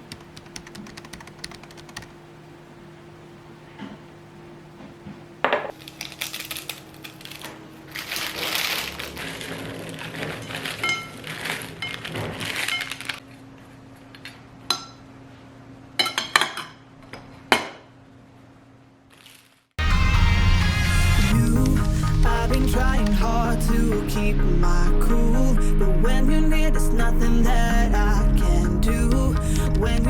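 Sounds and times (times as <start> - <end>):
faint steady hum: 0.0 - 12.1, 19.8 - 30.0
rustling: 5.7 - 13.2.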